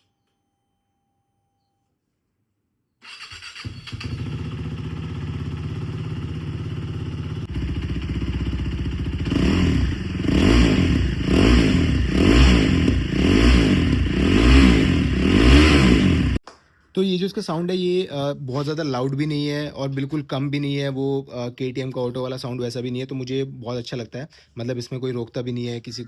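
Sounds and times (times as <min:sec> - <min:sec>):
motorcycle engine idling: 0:03.6 - 0:16.4.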